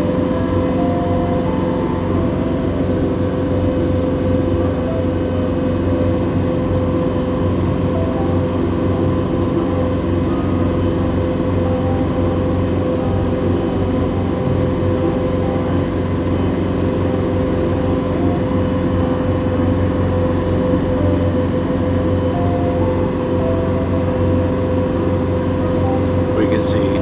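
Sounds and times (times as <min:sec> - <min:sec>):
boat engine droning: 0:00.0 - 0:27.0.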